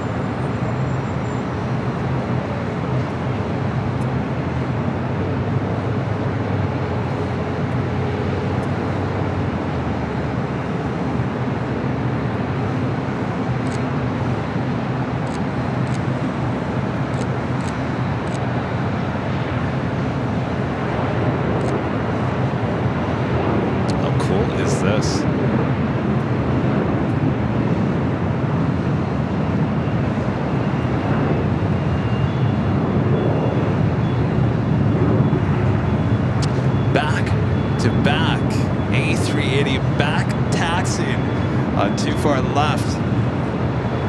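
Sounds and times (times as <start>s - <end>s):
distant jet engines: 0.0s - 44.0s
traffic rumble: 0.0s - 44.0s.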